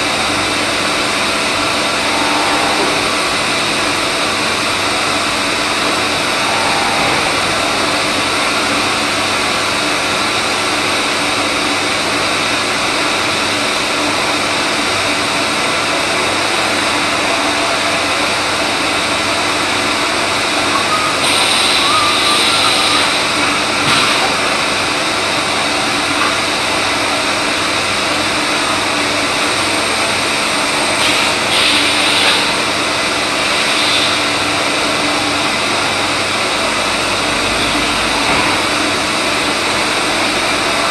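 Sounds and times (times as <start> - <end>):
cnc machine running: 0.0 - 11.4
bright hissing: 0.6 - 9.8.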